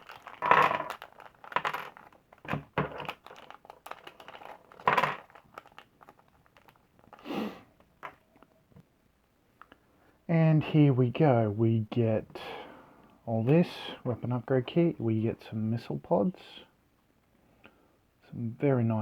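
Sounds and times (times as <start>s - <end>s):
hard plastic pieces clicking: 0.0s - 7.2s
plastic packaging crinkling: 0.0s - 8.5s.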